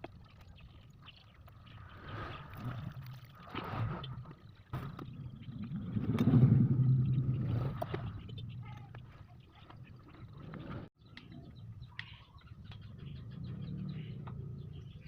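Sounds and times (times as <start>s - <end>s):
motor vehicle engine: 12.8s - 15.0s.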